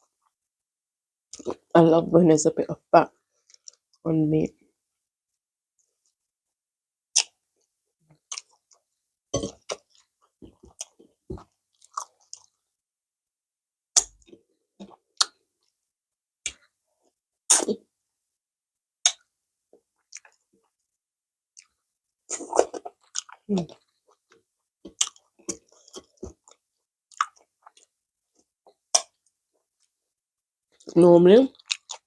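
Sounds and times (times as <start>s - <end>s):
chewing food: 1.3s - 1.7s, 8.2s - 8.8s, 9.4s - 12.6s, 20.1s - 20.4s, 21.6s - 30.0s, 30.8s - 32.0s
wet mouth clicks and smacks: 7.2s - 7.4s, 19.1s - 19.3s, 22.3s - 23.4s, 24.9s - 27.9s, 29.0s - 29.3s.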